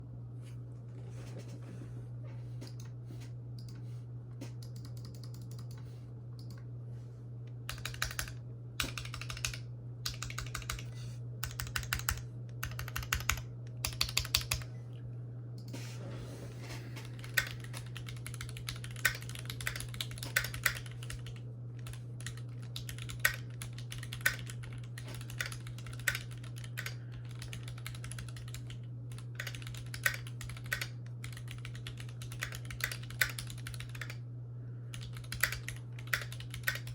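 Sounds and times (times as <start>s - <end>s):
steady low hum: 0.0s - 36.9s
mechanical keyboard typing: 4.6s - 5.8s, 7.7s - 14.7s, 17.1s - 34.2s, 34.9s - 36.9s.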